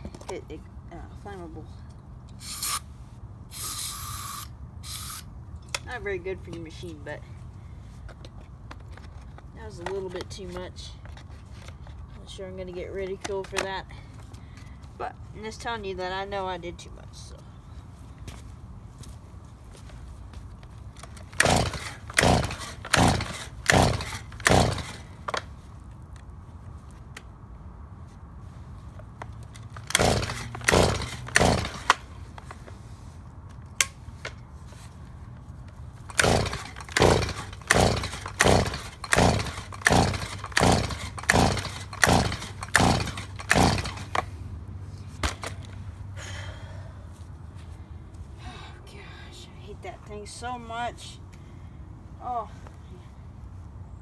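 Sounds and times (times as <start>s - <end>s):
engine cranking without catching: 2.3s - 2.9s, 3.5s - 5.3s, 21.0s - 25.5s, 29.5s - 32.7s, 35.9s - 44.4s, 45.1s - 45.8s
recoil starter pulls: 2.3s - 2.9s, 3.5s - 5.9s, 21.0s - 25.5s, 29.5s - 32.8s, 36.0s - 44.4s, 45.1s - 45.8s.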